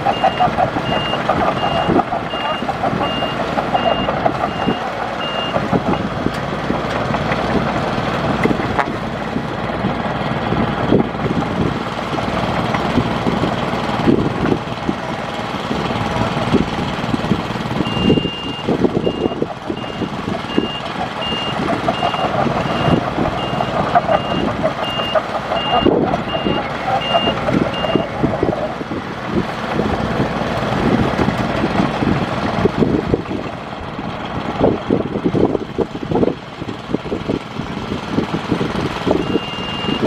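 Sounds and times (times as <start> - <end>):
reversing alarm beeping: 0.0 - 6.1, 17.8 - 28.2, 39.1 - 40.0
heavy machinery running: 0.0 - 40.0.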